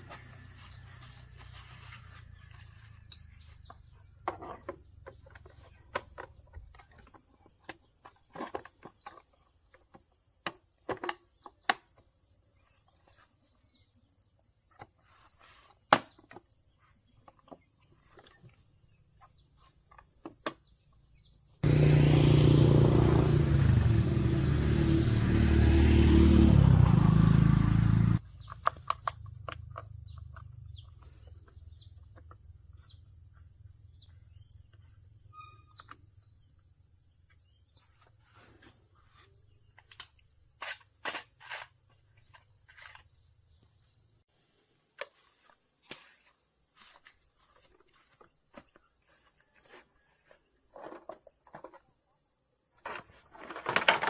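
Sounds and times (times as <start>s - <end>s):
motor running loudly: 21.6s - 25.8s.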